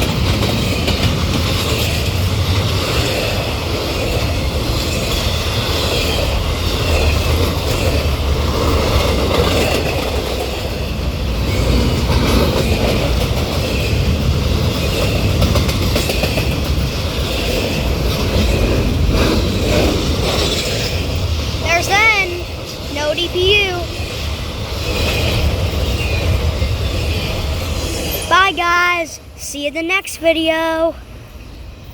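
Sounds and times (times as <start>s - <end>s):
freight train rolling past: 0.0s - 31.9s.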